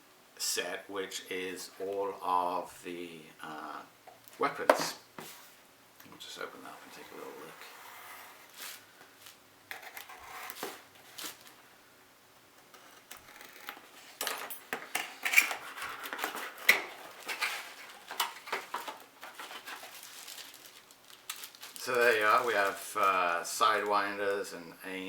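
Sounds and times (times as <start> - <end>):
packaging rustling and crinkling: 10.5 - 11.6, 14.8 - 24.0.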